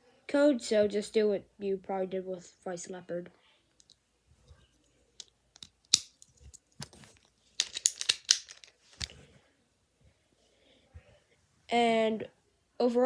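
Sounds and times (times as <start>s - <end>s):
plastic clicks: 5.2s - 9.2s
packaging rustles: 6.0s - 9.2s.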